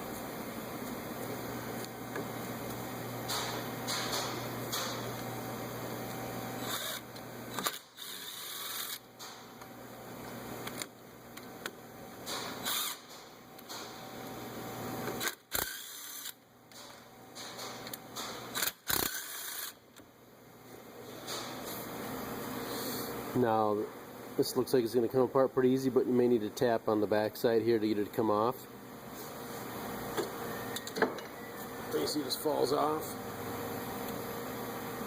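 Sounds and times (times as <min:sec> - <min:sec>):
ratchet clicking: 0:12.4 - 0:13.1, 0:15.2 - 0:16.4, 0:18.6 - 0:19.8.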